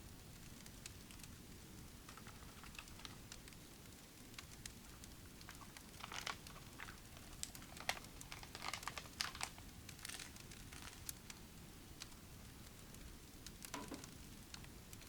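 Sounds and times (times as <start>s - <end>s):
crinkling and rustling: 2.1s - 3.6s, 4.4s - 11.4s.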